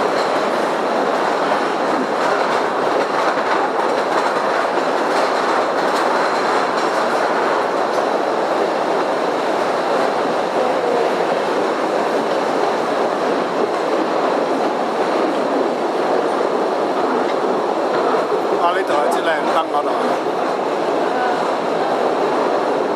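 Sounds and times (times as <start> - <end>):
train wheels rumbling on rails: 0.0 - 22.9.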